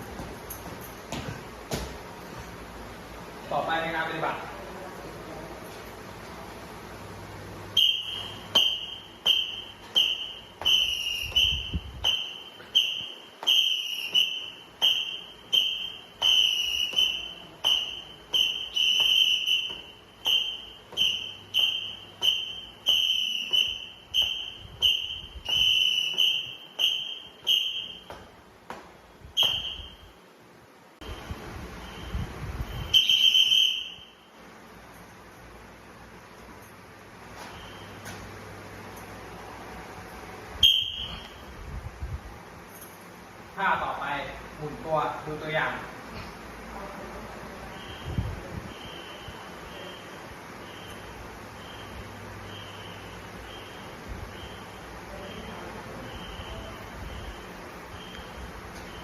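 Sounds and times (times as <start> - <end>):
whistle blasts: 7.7 - 28.3, 29.3 - 30.2, 31.0 - 34.4, 37.4 - 38.0, 40.6 - 41.5, 47.6 - 59.0.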